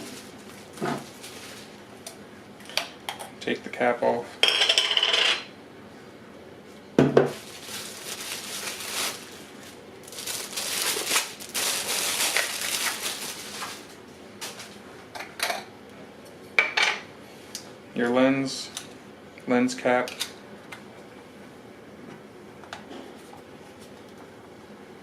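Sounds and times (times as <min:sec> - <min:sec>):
plastic rustling and crinkling: 0:00.0 - 0:01.8, 0:07.3 - 0:14.8.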